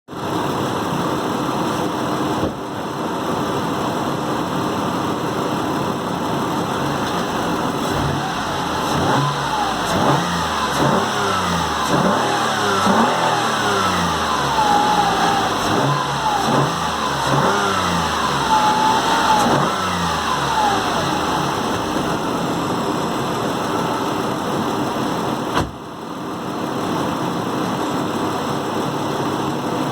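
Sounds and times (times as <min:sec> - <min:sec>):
car engine running and revving: 0:00.2 - 0:29.9.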